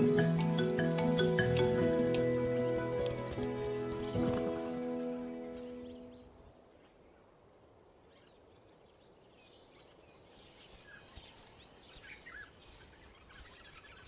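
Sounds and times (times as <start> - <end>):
music: 0.0 - 6.3
soft bird chirps: 8.0 - 14.0.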